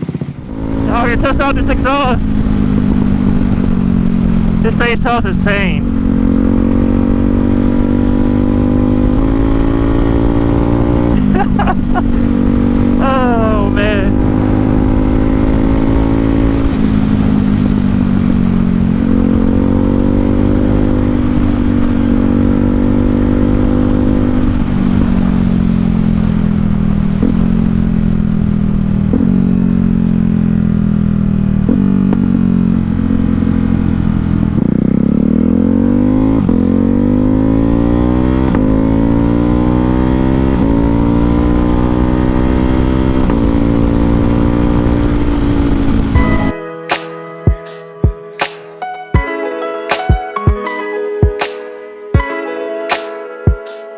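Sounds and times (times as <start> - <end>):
exhaust cracks: 0.0 - 22.9
motorcycle engine: 0.0 - 49.3.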